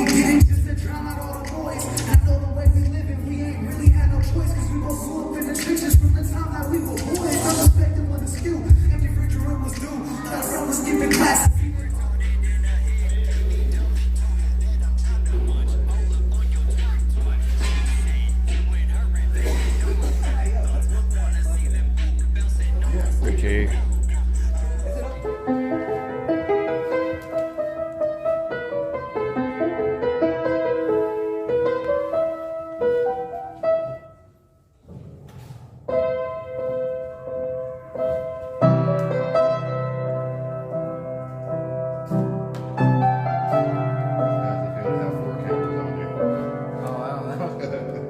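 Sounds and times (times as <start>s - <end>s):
keyboard melody over chords: 0.0s - 34.4s, 36.0s - 48.0s
deep bass notes: 6.0s - 10.0s.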